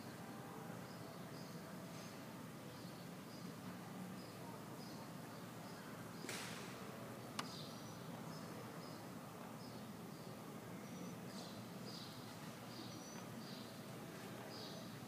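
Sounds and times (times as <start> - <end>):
faint outdoor ambience: 0.0 - 15.0
sharp click: 7.4 - 7.6.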